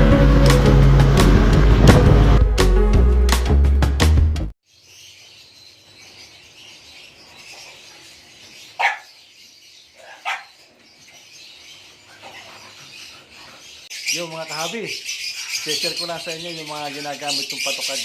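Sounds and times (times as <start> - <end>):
lovebirds chattering: 4.7 - 18.0.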